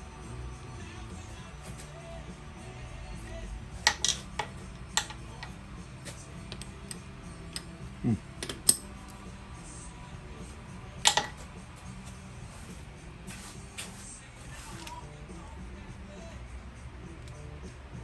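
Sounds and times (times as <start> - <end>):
steady low hum: 0.0 - 18.0
metallic clicks and clinks: 3.8 - 5.6, 8.4 - 9.2, 11.0 - 11.6.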